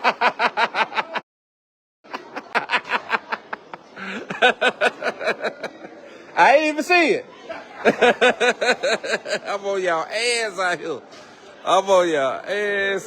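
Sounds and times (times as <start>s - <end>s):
people chattering: 0.0s - 1.2s, 2.0s - 13.0s
people laughing: 0.0s - 1.2s, 2.1s - 6.4s, 7.3s - 9.8s.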